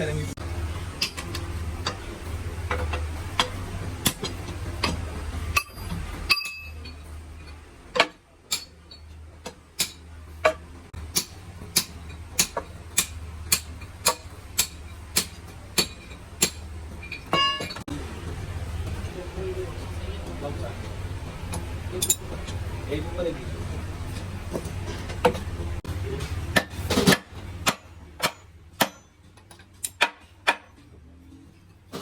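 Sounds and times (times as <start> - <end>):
low steady hum: 0.0 - 29.4
hammer tapping on metal: 7.9 - 17.8.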